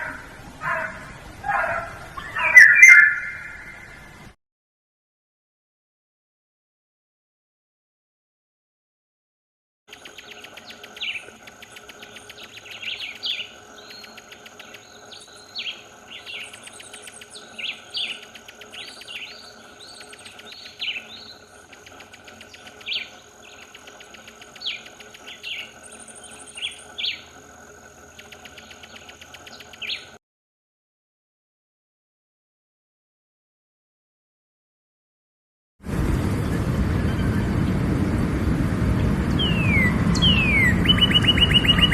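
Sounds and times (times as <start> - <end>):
bird chirping: 0.0 - 4.1, 9.9 - 27.4, 28.1 - 30.2, 39.3 - 41.9
steady high whine: 9.9 - 30.2, 35.9 - 41.9.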